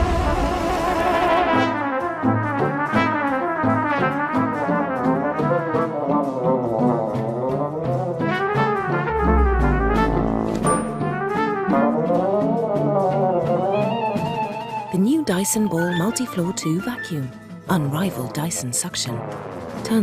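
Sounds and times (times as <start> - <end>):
brass band music: 1.1 - 6.7, 8.2 - 13.0.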